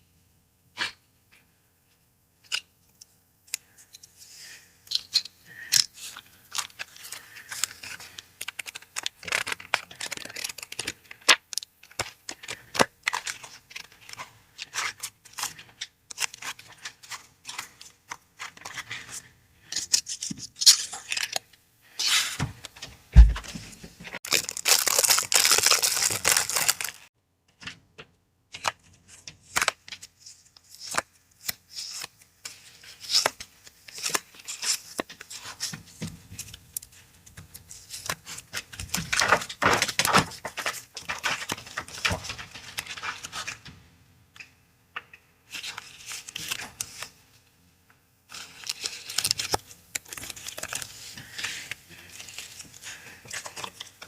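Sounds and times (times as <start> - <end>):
paper crinkling and tearing: 6.0 - 15.5, 24.2 - 27.1, 48.3 - 54.0
dull thump: 23.2 - 23.5.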